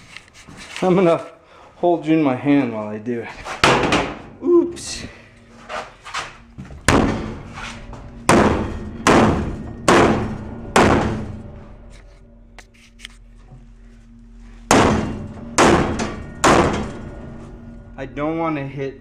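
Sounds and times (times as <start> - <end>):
hammer on thin steel wall: 8.3 - 11.4, 14.7 - 17.1.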